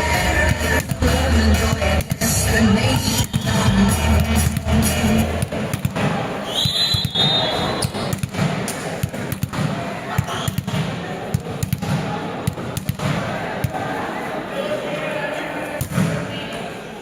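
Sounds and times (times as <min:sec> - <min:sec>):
music: 0:00.0 - 0:05.4
volleyballs bouncing on floor: 0:00.5 - 0:13.8.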